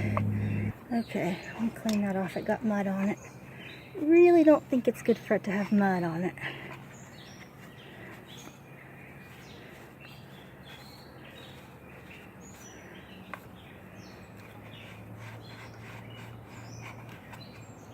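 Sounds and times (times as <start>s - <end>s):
steady low hum: 0.0s - 0.8s
birds chirping: 0.0s - 17.9s.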